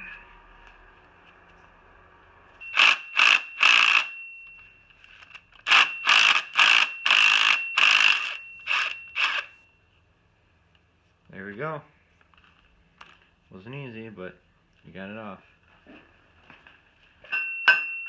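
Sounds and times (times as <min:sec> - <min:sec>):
steady high whine: 0:00.0 - 0:09.8
impact wrench hammering: 0:02.6 - 0:04.2, 0:05.6 - 0:09.5.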